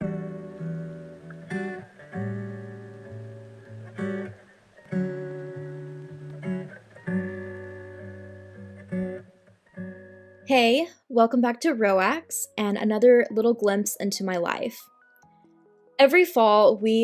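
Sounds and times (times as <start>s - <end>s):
acoustic guitar strummed chords: 0.0s - 10.5s.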